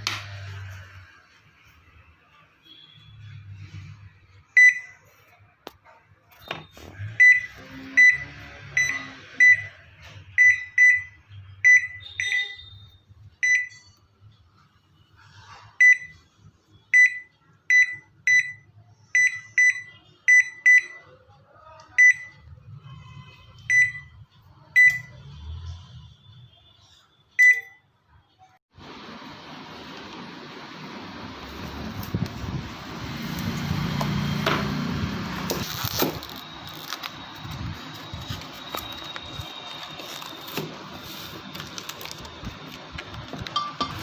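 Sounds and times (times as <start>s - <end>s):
microwave keypad beeps: 4.6s - 5.0s, 6.4s - 9.7s, 10.3s - 14.0s, 15.8s - 16.2s, 16.9s - 21.0s, 22.0s - 22.4s, 23.7s - 24.2s, 24.8s - 25.1s, 27.4s - 27.8s.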